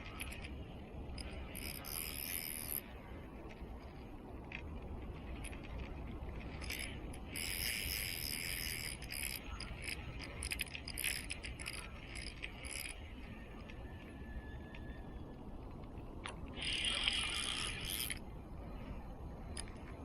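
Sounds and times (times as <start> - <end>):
fishing reel drag buzzing: 1.2 - 2.9, 6.6 - 13.0, 16.6 - 18.2.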